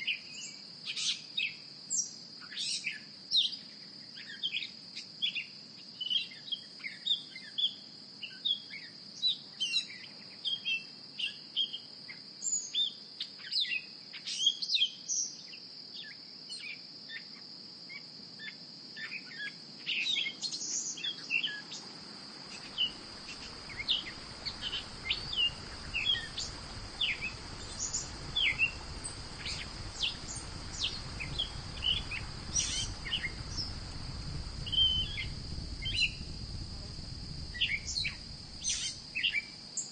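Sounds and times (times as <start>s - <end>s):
low rushing noise: 21.8s - 39.6s
high-pitched hum: 22.4s - 39.4s
birds chirping: 22.4s - 39.5s.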